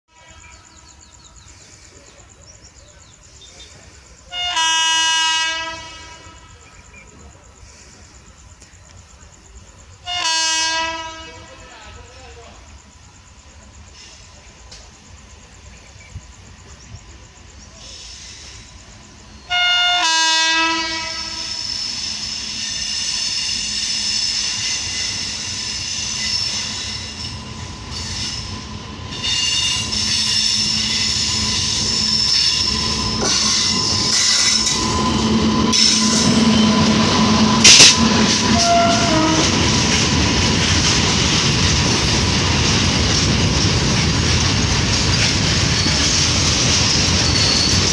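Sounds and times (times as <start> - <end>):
train rumbling past: 0.1 - 47.9
locomotive horn blast: 4.3 - 6.7, 10.0 - 11.6, 19.5 - 21.6, 35.7 - 39.7
high wheel squeal: 17.8 - 19.5, 20.9 - 40.0, 44.0 - 47.9.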